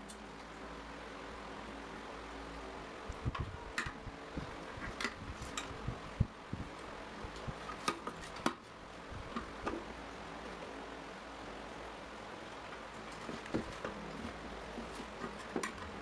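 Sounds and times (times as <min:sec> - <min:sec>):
fan parts clicking and knocking: 0:03.1 - 0:10.0, 0:12.8 - 0:16.0.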